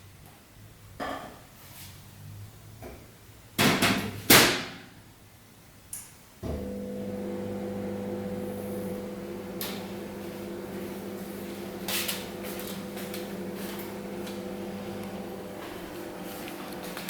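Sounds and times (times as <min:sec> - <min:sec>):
microwave oven humming: 0:06.4 - 0:17.0.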